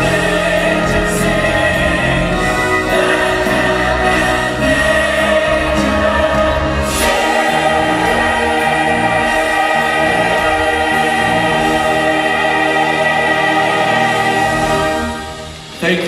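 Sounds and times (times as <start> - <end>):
choir singing sustained chords: 0.0 - 16.0.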